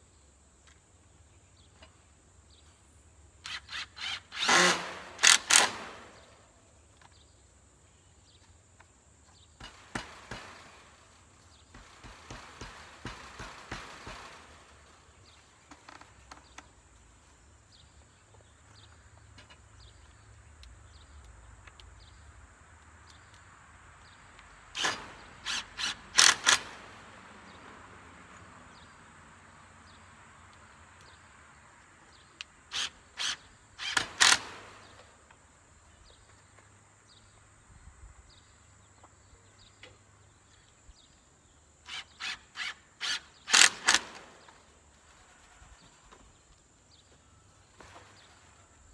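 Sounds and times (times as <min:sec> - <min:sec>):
hammer nailing: 0:11.7 - 0:14.6.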